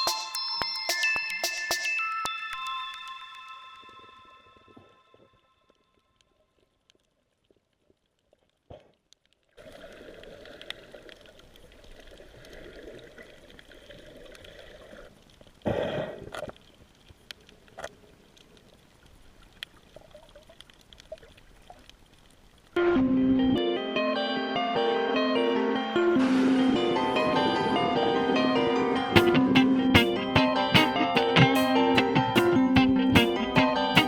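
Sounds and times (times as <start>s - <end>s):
water trickling and gurgling: 9.5s - 15.7s.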